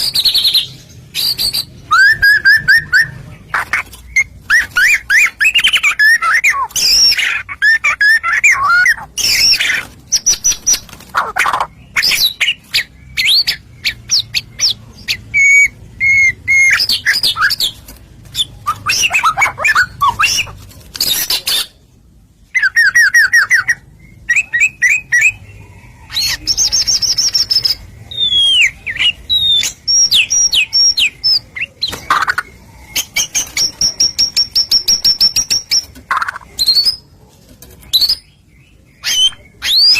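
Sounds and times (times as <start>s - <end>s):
songbird singing trills and whistles: 0.0s - 21.8s, 22.4s - 37.1s, 37.8s - 39.9s.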